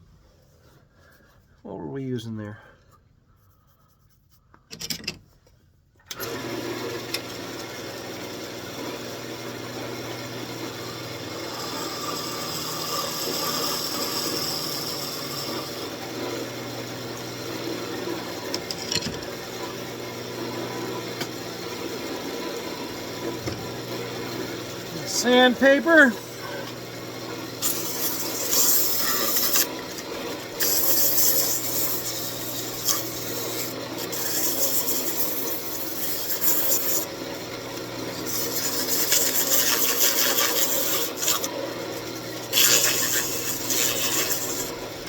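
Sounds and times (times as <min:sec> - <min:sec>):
wood lathe motor humming: 0:06.1 - 0:45.0
spinning workpiece hiss: 0:27.6 - 0:29.7, 0:30.6 - 0:37.1, 0:38.3 - 0:41.5.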